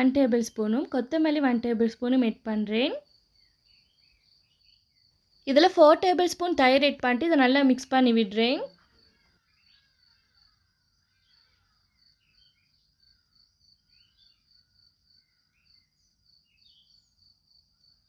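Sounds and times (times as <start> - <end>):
cricket chirping: 2.8 - 6.8, 8.7 - 18.0
bird chirps: 3.4 - 5.2, 8.7 - 17.5.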